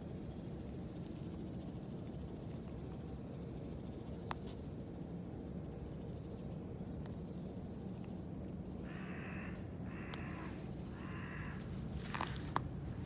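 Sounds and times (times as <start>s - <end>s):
crow cawing: 8.8s - 12.3s.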